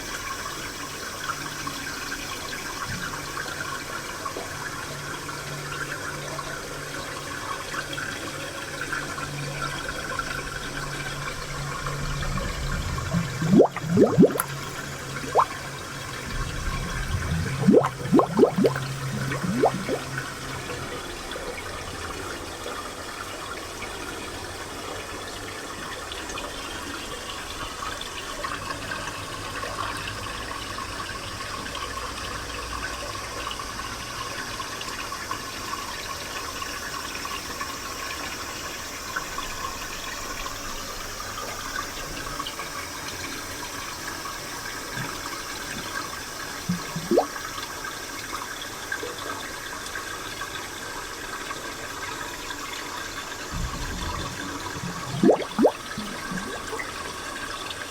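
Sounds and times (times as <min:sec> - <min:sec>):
spring water flowing and splashing: 0:10.4 - 0:20.6, 0:44.7 - 0:47.6, 0:52.2 - 0:57.9.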